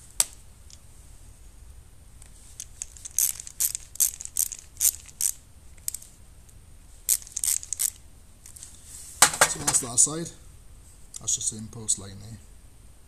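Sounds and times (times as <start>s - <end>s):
screwdriver clicking and scraping: 2.6s - 6.0s, 7.1s - 8.6s.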